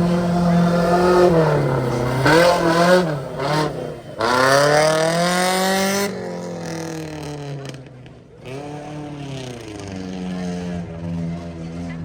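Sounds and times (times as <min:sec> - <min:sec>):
car engine revving hard: 0:00.0 - 0:07.7.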